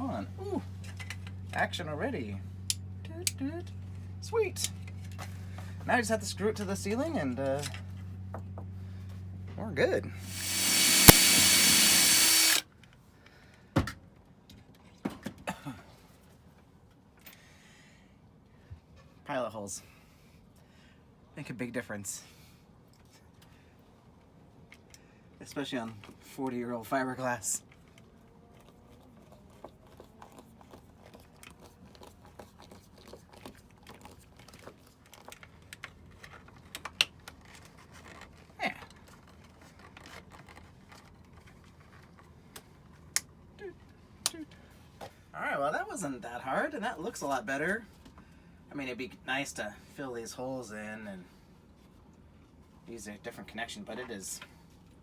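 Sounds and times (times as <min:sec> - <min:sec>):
power drill boring into fibreglass: 0:10.2 - 0:12.6.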